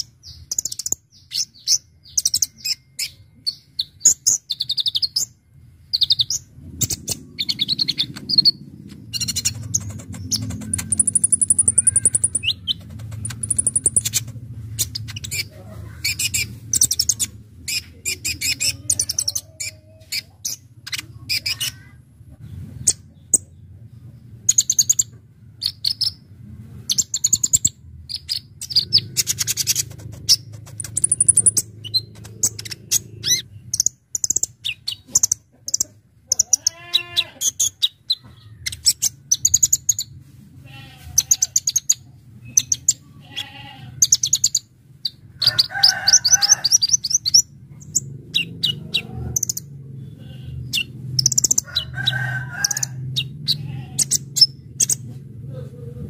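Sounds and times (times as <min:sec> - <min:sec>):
bird singing rapid high chattering: 0:00.0 - 0:21.9, 0:24.3 - 0:26.3, 0:26.9 - 0:40.1, 0:41.2 - 0:55.1
steady low hum: 0:05.1 - 0:36.9
faint bird calls: 0:07.4 - 0:14.3.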